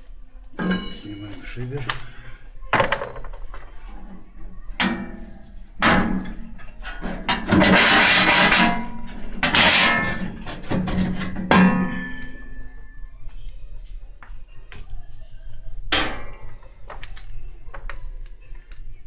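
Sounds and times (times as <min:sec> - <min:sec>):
metal clanks: 0:00.6 - 0:01.6, 0:04.8 - 0:13.0, 0:15.9 - 0:16.6
metal scraping against metal: 0:00.6 - 0:01.6, 0:03.5 - 0:13.0.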